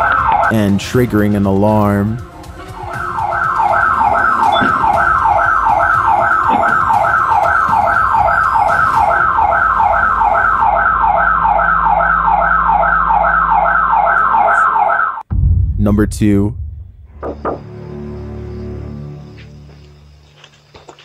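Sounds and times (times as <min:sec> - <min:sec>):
alarm siren fast whooping: 0:00.0 - 0:00.6, 0:02.2 - 0:15.2.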